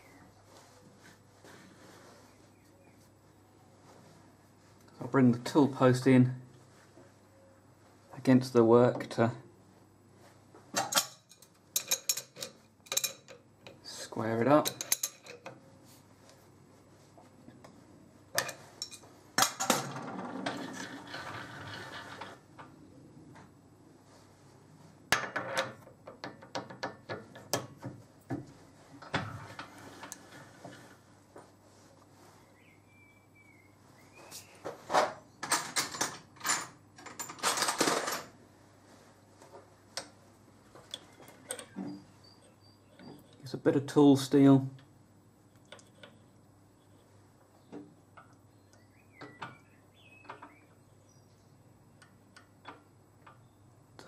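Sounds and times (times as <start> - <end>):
metallic rattling and clinking: 10.8 - 13.8, 14.6 - 15.5
metal clinks and knocks on lathe tooling: 14.6 - 15.6.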